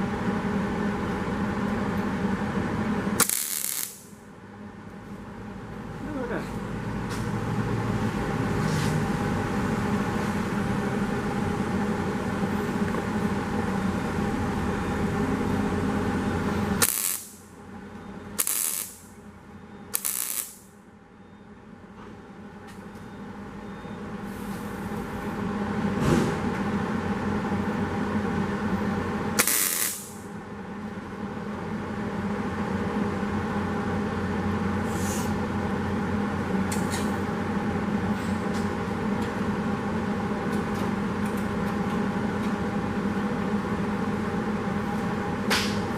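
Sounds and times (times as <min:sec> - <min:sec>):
short welding tack bursts: 0:03.2 - 0:04.1, 0:16.8 - 0:17.4, 0:18.4 - 0:19.1, 0:19.9 - 0:20.7, 0:29.4 - 0:30.2
welding crackling hiss: 0:03.2 - 0:04.2, 0:16.8 - 0:17.5, 0:18.4 - 0:19.1, 0:19.9 - 0:20.7, 0:29.4 - 0:30.2.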